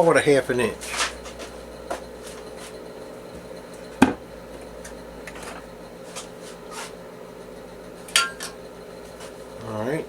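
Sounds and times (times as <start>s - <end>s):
steady low hum: 0.0s - 10.0s
tool knocking on metal lathe: 3.3s - 5.7s.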